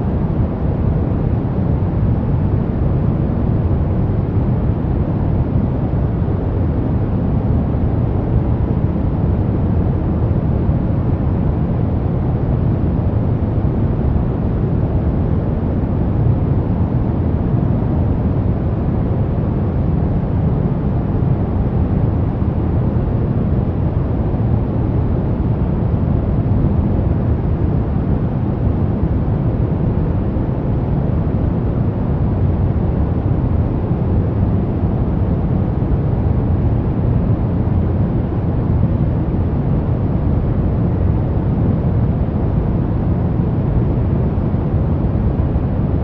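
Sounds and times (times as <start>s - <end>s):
steady low rumble: 0.0s - 46.0s.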